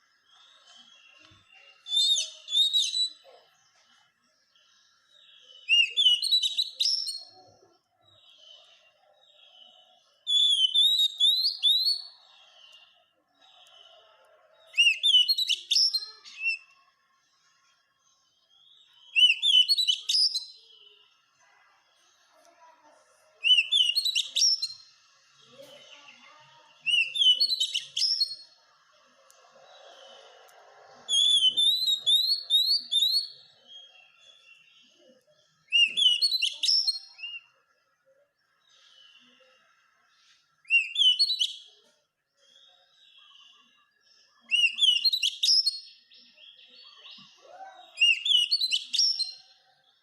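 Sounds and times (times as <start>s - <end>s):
faint bird chirps: 0.0s - 50.0s
bird whistled song: 0.2s - 3.3s, 5.4s - 7.4s, 8.1s - 14.0s, 14.7s - 16.8s, 18.7s - 20.9s, 23.4s - 24.9s, 26.8s - 28.5s, 31.1s - 34.9s, 35.6s - 37.6s, 40.6s - 41.8s, 42.7s - 49.4s.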